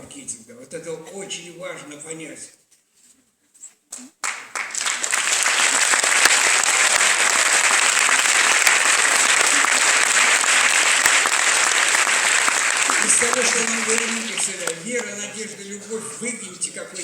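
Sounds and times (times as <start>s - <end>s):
audience applauding: 4.2s - 15.5s.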